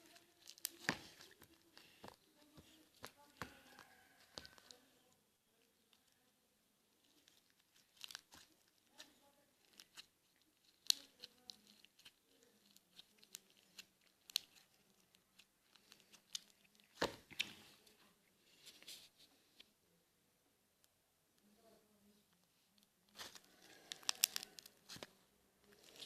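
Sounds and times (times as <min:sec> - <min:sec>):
slime popping and crackling: 0:00.0 - 0:04.8, 0:07.1 - 0:17.7, 0:23.1 - 0:26.0.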